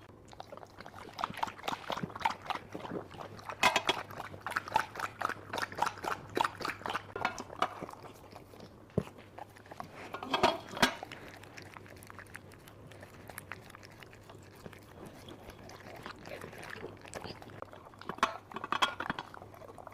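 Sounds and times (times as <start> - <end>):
dog chewing and crunching food: 0.0 - 19.9.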